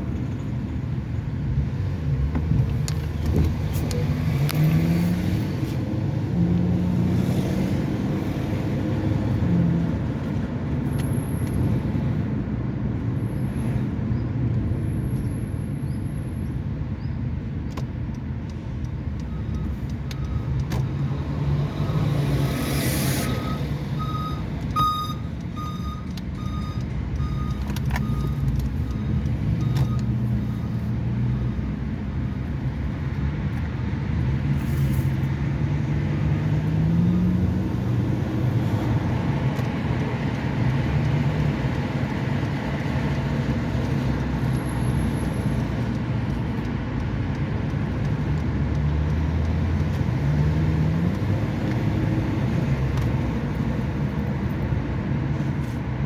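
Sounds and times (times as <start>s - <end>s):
traffic rumble: 0.0s - 56.0s
vehicle engines pulling away: 1.6s - 12.1s, 19.2s - 56.0s
truck reversing alarm beeps: 19.2s - 20.6s, 23.1s - 31.7s.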